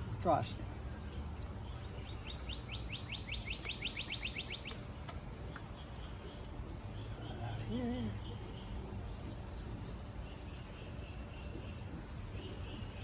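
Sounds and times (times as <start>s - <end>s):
bird trilling: 2.0s - 4.8s.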